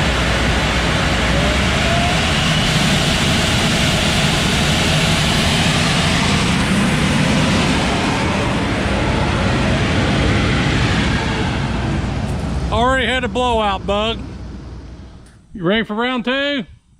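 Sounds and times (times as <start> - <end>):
combine harvester rumbling: 0.0 - 15.9.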